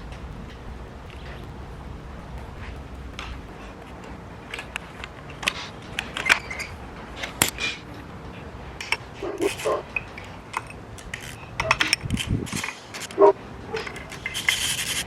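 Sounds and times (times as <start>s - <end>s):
tools and metal parts clinking: 8.8s - 15.0s.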